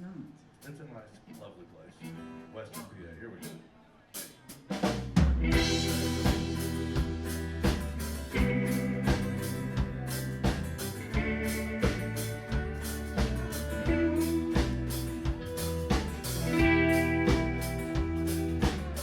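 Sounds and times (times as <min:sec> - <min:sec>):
country band playing: 0:04.8 - 0:19.0.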